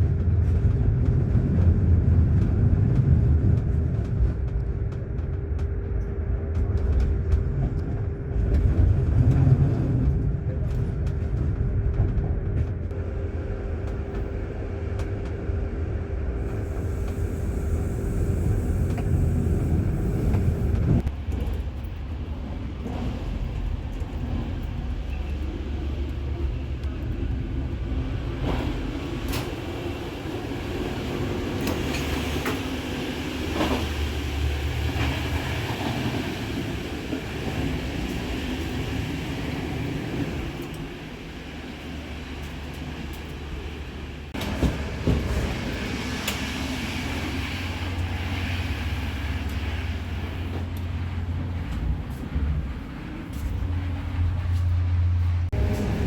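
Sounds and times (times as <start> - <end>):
train wheels rumbling on track: 0.0 - 56.0.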